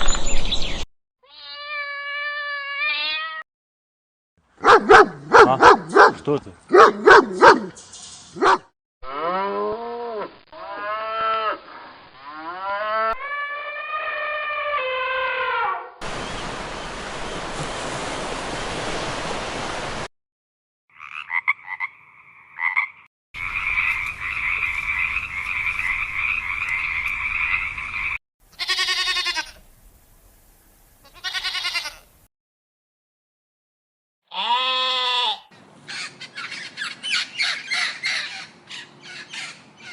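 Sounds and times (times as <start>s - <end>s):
dog barking: 4.6s - 7.8s, 8.4s - 8.7s
cow mooing: 9.0s - 11.6s
frog chorus: 20.9s - 27.9s
bleats: 28.6s - 29.6s, 31.1s - 32.1s, 34.3s - 35.5s.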